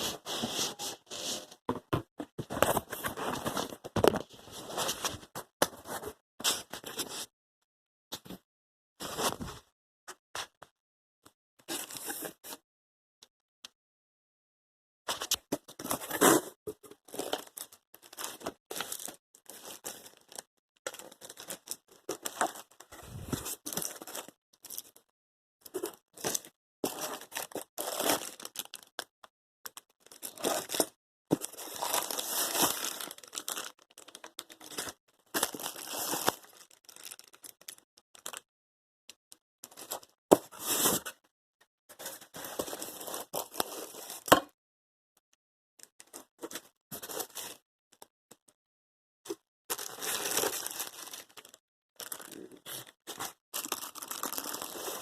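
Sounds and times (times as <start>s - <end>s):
cardboard tearing and crinkling: 30.2s - 34.1s, 34.7s - 37.3s, 49.7s - 55.0s.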